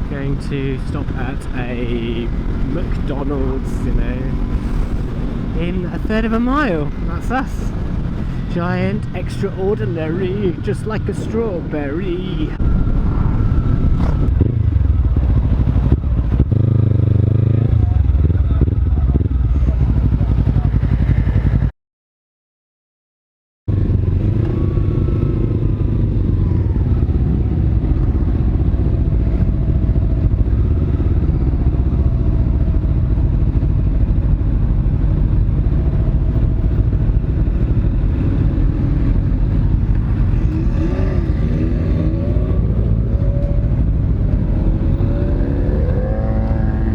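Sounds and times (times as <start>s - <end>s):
motorcycle engine running: 0.0s - 21.7s, 23.7s - 46.9s
riding noise: 0.0s - 21.7s, 35.6s - 46.9s.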